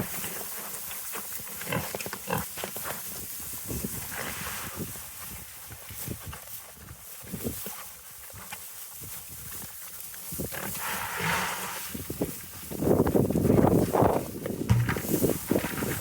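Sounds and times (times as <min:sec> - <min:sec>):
knocks and rustles: 0:14.6 - 0:16.0.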